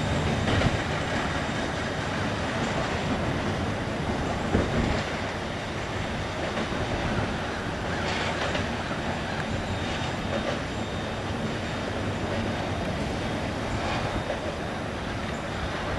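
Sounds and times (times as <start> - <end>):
train cars rolling on rails: 0.0 - 15.9.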